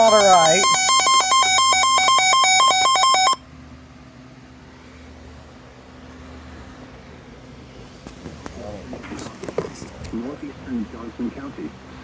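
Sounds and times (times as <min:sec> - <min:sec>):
two-pitch electronic alert tone: 0:00.0 - 0:03.4
faint hiss and hum: 0:04.0 - 0:12.0.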